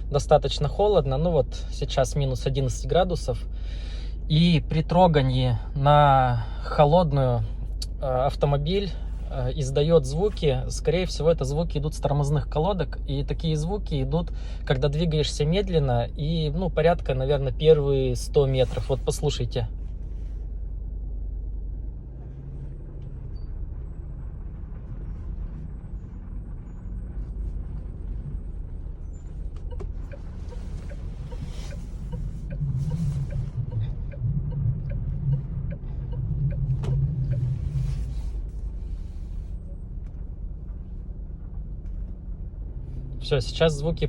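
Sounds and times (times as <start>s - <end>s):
car rolling rumble: 0.0s - 44.0s
car brakes groaning: 22.1s - 44.0s.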